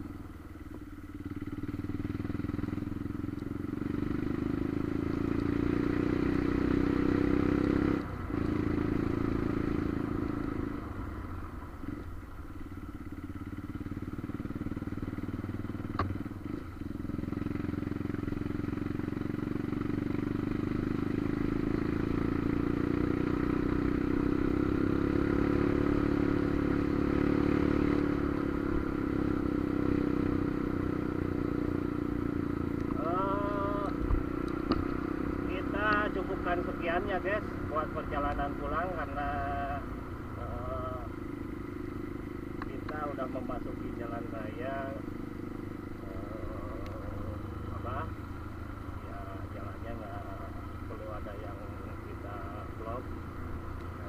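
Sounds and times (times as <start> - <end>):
motorcycle engine running: 0.0 - 54.0
sharp click: 15.9 - 16.2.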